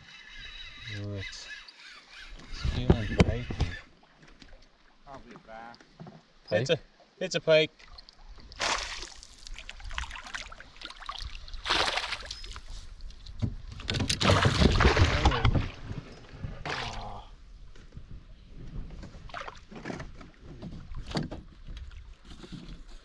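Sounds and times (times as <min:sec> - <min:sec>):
fish splashing at surface: 0:08.6 - 0:12.5.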